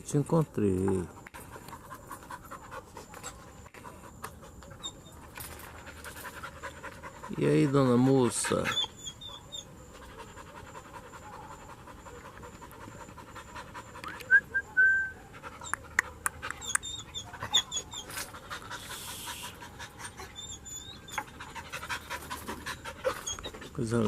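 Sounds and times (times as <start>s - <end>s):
dog panting: 0.8s - 14.4s, 15.2s - 24.0s
high chirping calls: 18.8s - 21.4s.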